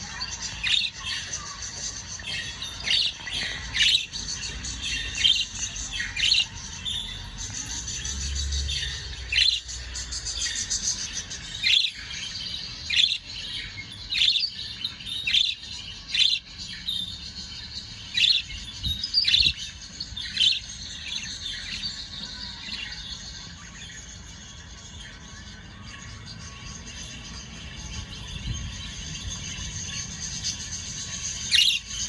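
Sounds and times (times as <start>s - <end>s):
high warbling chatter: 0.0s - 32.0s
budgerigar chirps: 0.4s - 1.6s, 2.2s - 4.2s, 4.9s - 8.1s, 8.8s - 10.8s, 11.6s - 12.2s, 12.9s - 14.6s, 15.2s - 16.5s, 18.1s - 19.6s, 20.3s - 21.9s.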